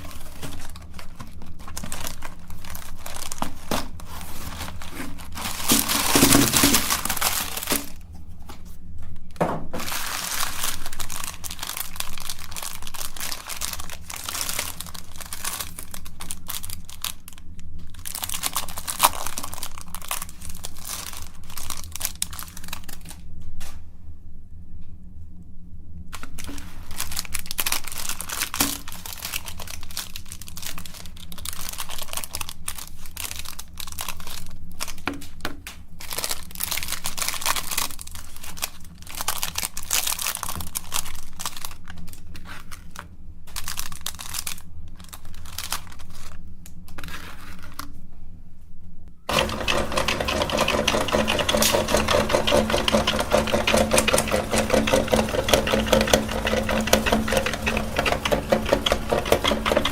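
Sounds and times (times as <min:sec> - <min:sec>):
crackling through grinder auger: 0:00.1 - 0:08.0, 0:09.9 - 0:23.1, 0:49.3 - 0:59.9
meat grinder motor humming: 0:49.3 - 0:59.9.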